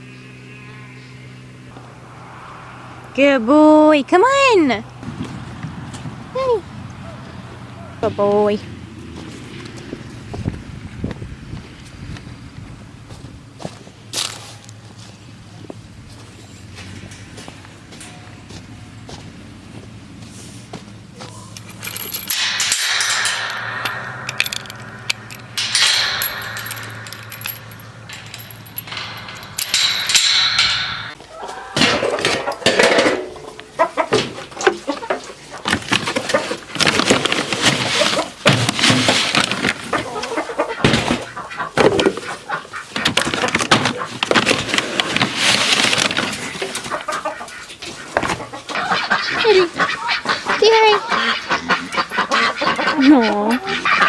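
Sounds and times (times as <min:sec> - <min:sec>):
rattling and clattering: 0:16.3 - 0:18.4, 0:21.0 - 0:54.0
chickens clucking: 0:16.8 - 0:54.0.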